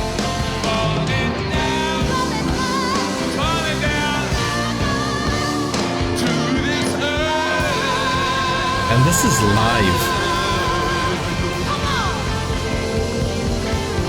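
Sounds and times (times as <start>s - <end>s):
live rock band playing: 0.0s - 14.0s
person singing: 8.8s - 11.0s.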